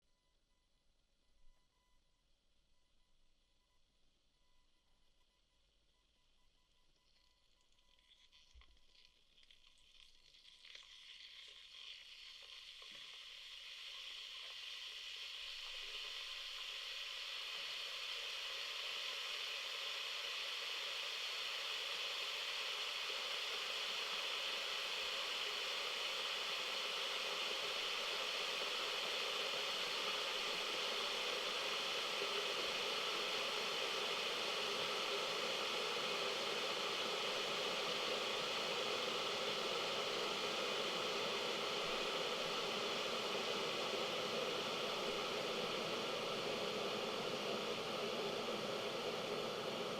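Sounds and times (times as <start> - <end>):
electric kettle hissing: 10.7 - 49.9.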